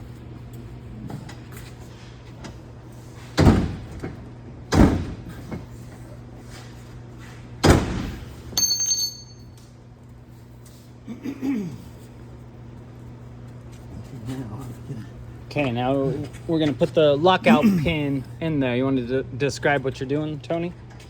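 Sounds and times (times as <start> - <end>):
high-pitched metal ring: 8.6 - 9.6.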